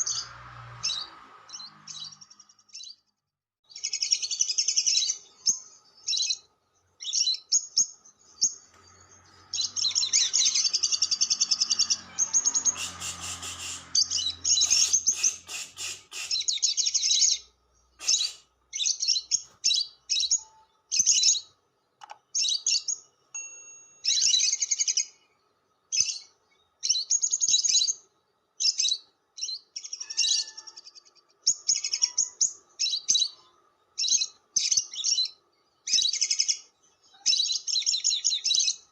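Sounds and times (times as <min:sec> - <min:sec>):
bird high-pitched trilling: 0:03.7 - 0:21.5, 0:22.3 - 0:25.2, 0:28.6 - 0:38.9.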